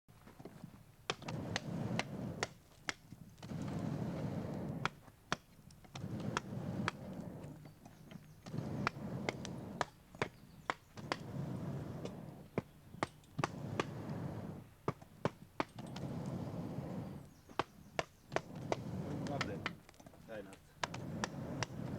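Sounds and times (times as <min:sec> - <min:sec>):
rough rushing noise: 0:18.4 - 0:21.9.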